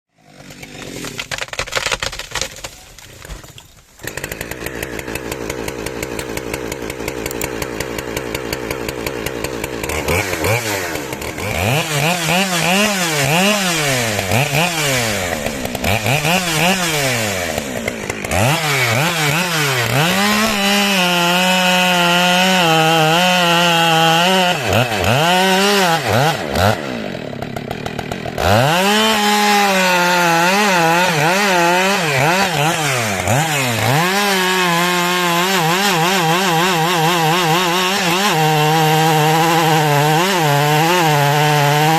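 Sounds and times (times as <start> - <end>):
small engine idling and revving: 4.0 - 41.9.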